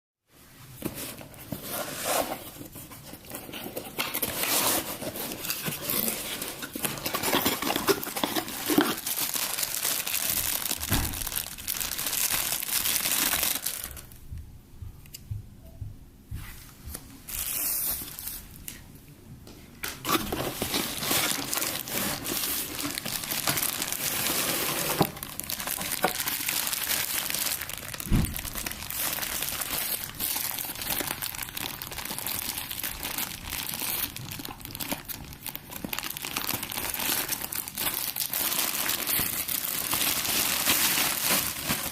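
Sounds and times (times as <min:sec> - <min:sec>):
plastic wrapping crinkling: 0:00.8 - 0:14.2, 0:19.8 - 0:41.9
plastic tearing: 0:03.7 - 0:13.9, 0:19.9 - 0:41.9.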